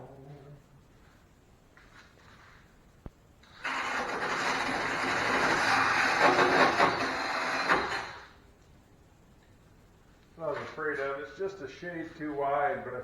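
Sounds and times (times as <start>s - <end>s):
power tool sanding sheet metal: 3.6s - 8.2s.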